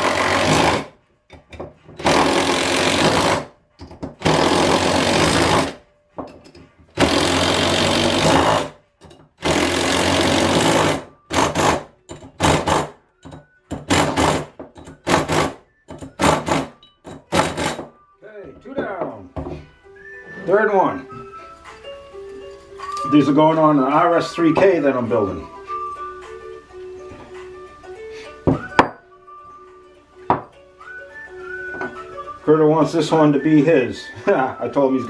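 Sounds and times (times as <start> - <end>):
impact wrench hammering: 0.0 - 18.0.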